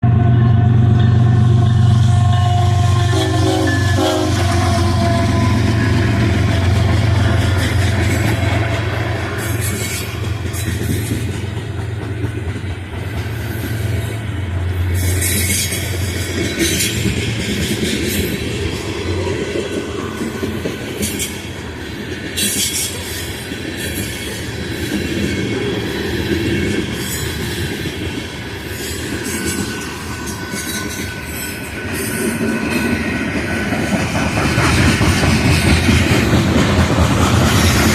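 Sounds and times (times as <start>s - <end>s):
train rumbling past: 0.0s - 37.9s
wheel squeal: 14.9s - 18.4s
wheels clicking over rail joints: 32.4s - 37.9s.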